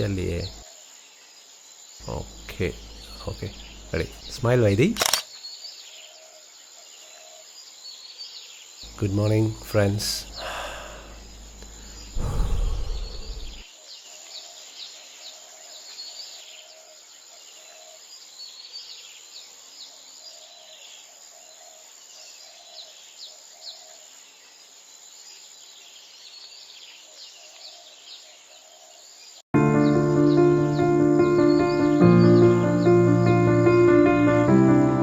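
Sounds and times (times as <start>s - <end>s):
birds chirping: 0.0s - 0.6s, 2.0s - 6.1s, 7.0s - 13.7s, 29.6s - 35.0s
low rumble: 2.0s - 4.4s, 10.2s - 13.6s
low bird call: 8.9s - 13.6s.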